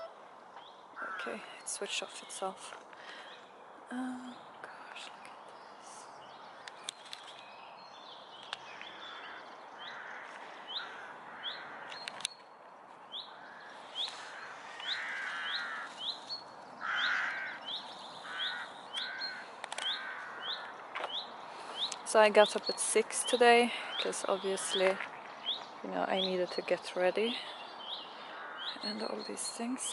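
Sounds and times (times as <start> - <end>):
harsh bird calls: 5.6 - 12.4, 13.1 - 29.9.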